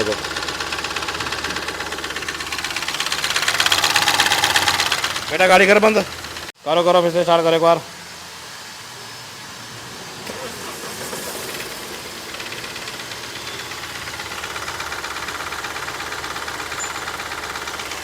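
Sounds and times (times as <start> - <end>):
fast even engine tick: 0.0 - 6.5, 10.6 - 18.0
diesel engine starting and idling: 0.0 - 18.0.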